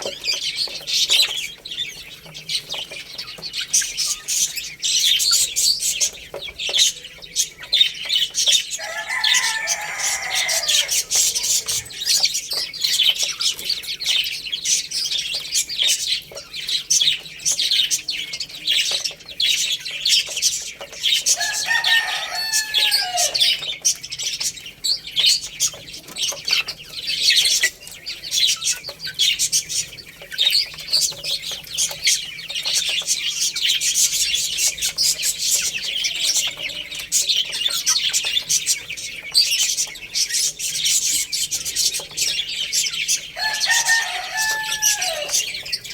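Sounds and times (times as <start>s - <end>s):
baby chicks chirping: 0.0s - 45.9s
adult chicken call: 8.8s - 12.2s, 21.3s - 23.6s, 43.4s - 45.7s.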